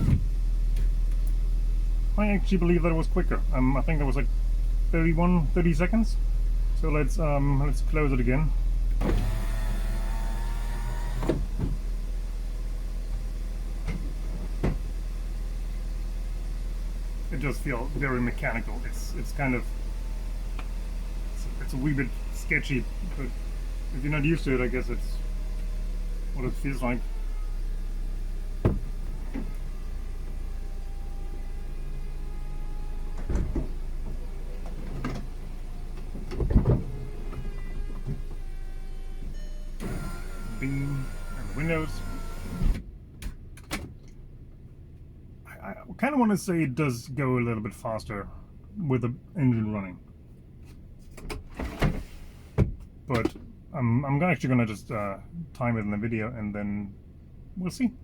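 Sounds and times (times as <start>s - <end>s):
engine idling hum: 0.0s - 58.0s
electric motor whine: 9.0s - 11.7s, 36.9s - 42.8s.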